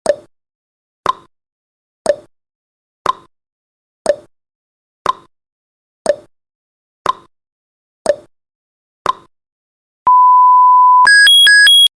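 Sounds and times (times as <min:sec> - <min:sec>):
electronic alarm alternating pitches: 0:10.1 - 0:11.9
steady beep: 0:10.1 - 0:11.9.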